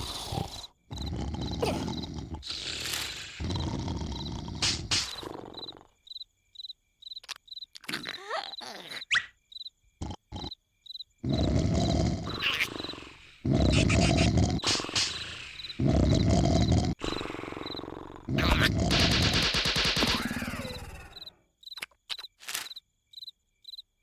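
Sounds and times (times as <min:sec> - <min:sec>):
cartoon snoring: 0:00.0 - 0:06.0, 0:10.0 - 0:10.6, 0:11.2 - 0:21.3
cartoon crickets chirping: 0:00.0 - 0:24.0.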